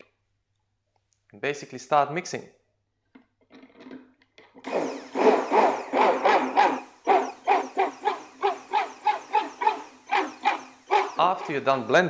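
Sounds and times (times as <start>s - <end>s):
stick blender running in liquid: 4.6s - 12.0s.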